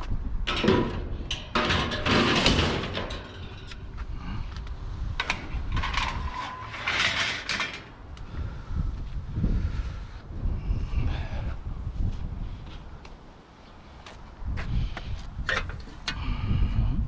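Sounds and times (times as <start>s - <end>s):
scrap scraping and rattling: 0.5s - 8.0s
wind on microphone: 3.6s - 6.7s, 8.0s - 13.3s, 14.2s - 17.0s.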